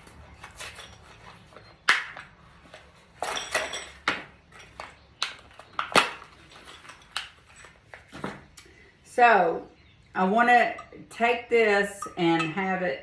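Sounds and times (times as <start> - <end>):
metal and glass clinks: 3.2 - 4.8, 10.7 - 11.0, 11.9 - 12.7.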